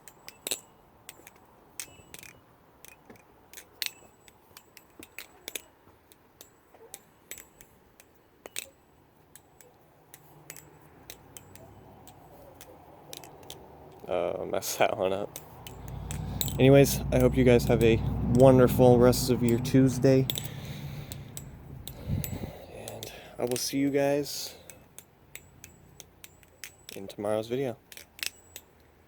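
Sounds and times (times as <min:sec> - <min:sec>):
butterfly knife metal clicks: 0:15.3 - 0:16.6.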